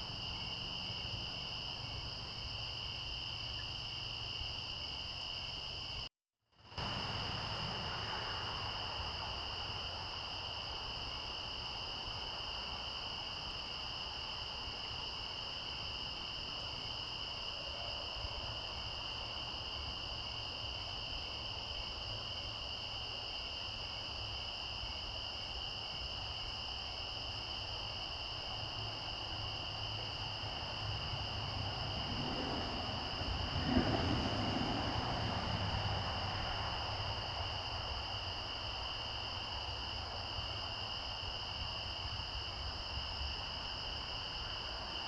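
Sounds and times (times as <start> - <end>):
insects trilling: 0.0 - 6.1, 6.8 - 45.0.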